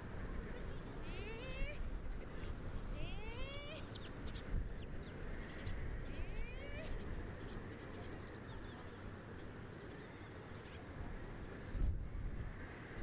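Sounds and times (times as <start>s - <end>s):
wind buffeting microphone: 0.0s - 8.8s, 11.0s - 13.0s
bird calls: 3.0s - 10.9s.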